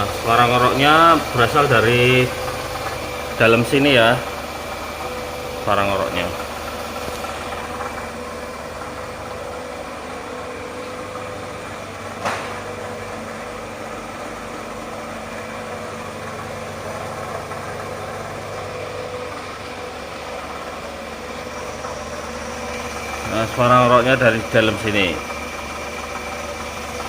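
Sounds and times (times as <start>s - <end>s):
car engine idling with growl: 0.0s - 27.0s.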